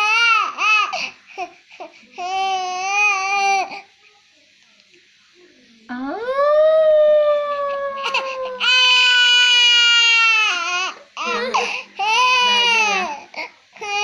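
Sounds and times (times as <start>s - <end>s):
small child crying: 7.1s - 13.2s.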